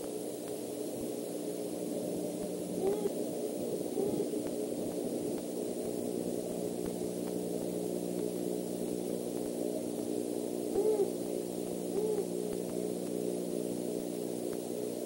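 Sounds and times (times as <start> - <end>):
electrical hum and hiss: 0.0 - 15.0
distant owl hoots: 2.7 - 5.0, 10.5 - 12.8.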